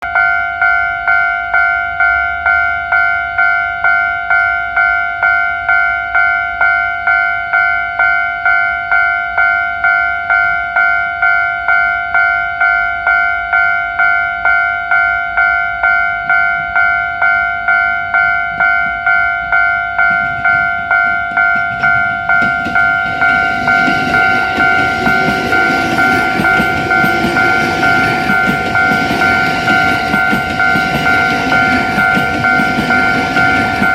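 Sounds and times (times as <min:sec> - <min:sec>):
level-crossing warning bell: 0:00.0 - 0:33.9
electric train rumbling: 0:07.8 - 0:33.9.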